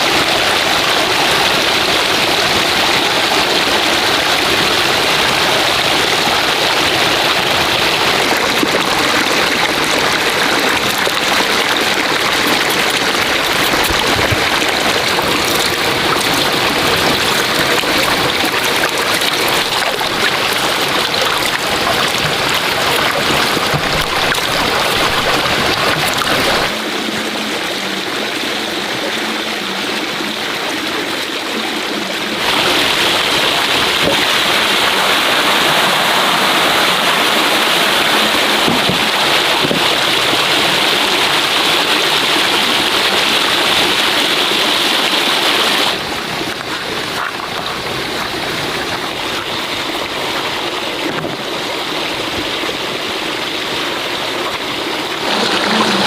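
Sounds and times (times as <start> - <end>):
flowing water rushing: 0.0 - 56.0.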